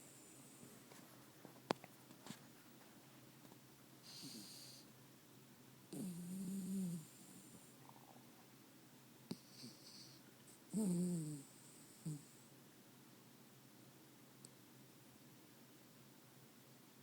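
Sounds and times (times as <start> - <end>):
dog snoring: 4.0 - 4.9, 5.9 - 8.2, 9.3 - 12.5.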